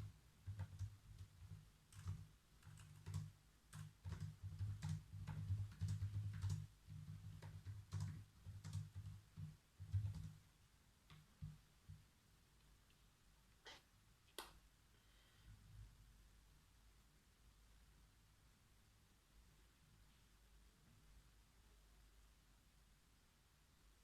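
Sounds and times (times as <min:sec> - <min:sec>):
computer keyboard typing: 0:00.0 - 0:10.4.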